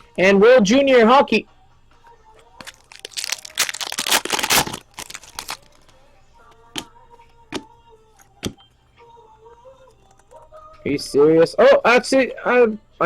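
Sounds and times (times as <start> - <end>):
wrapper tearing and crinkling: 2.6 - 5.9.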